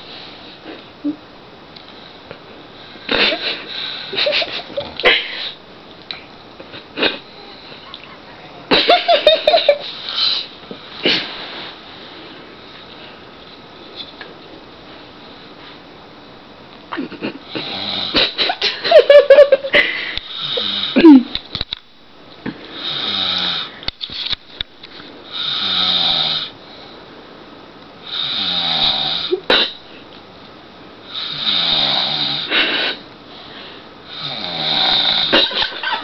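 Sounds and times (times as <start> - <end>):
man snoring: 17.4 - 18.3, 20.2 - 21.1, 22.8 - 23.7, 25.3 - 26.6, 28.0 - 29.4, 31.0 - 32.5, 34.1 - 35.4.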